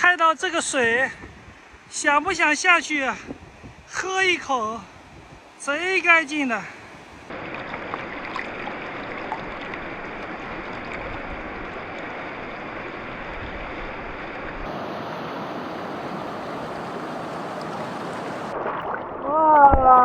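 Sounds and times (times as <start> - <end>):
stream flowing: 4.2 - 19.6.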